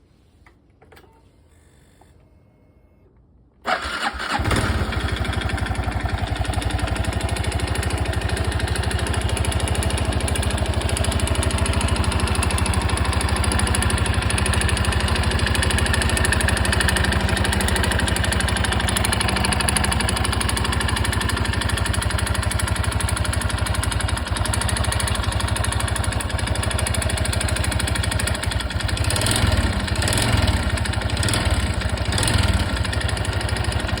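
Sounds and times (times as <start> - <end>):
motorcycle engine idling: 3.9 - 34.0.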